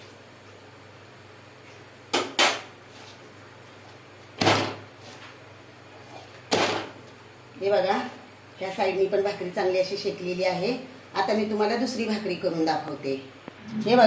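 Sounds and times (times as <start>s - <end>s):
sharp knocks of utensils on griddle: 2.1s - 2.7s.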